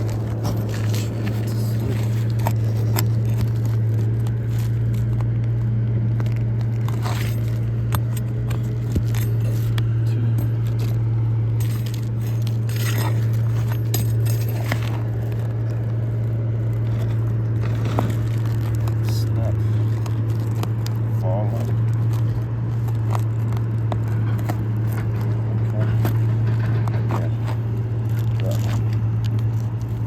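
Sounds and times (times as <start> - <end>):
steady low hum: 0.0 - 30.0
shingles cracking: 10.6 - 21.1
pry bar scraping and clicking: 21.8 - 30.0.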